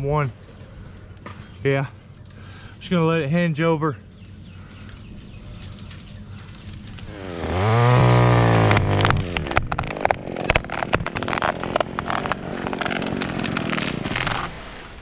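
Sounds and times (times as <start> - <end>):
wood cracking and snapping: 5.5 - 15.0
chainsaw revving and cutting: 6.8 - 14.8.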